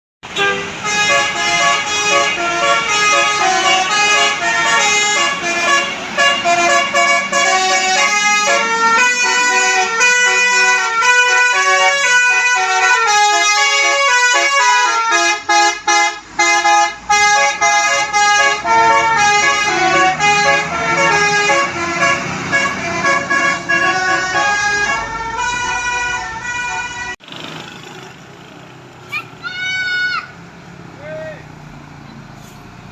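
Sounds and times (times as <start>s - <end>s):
musical bus air horn: 0.2s - 27.2s.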